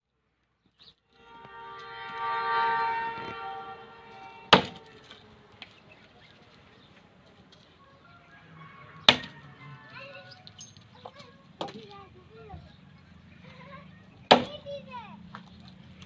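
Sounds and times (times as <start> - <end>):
pitched drone with overtones: 1.1 - 6.0
axe chopping wood: 14.3 - 14.5.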